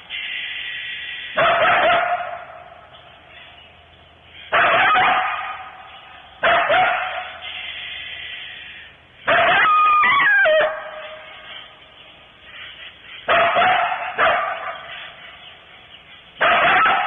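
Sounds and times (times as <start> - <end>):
coyotes barking: 0.0 - 17.0
coyotes howling: 4.4 - 11.8, 12.6 - 17.0.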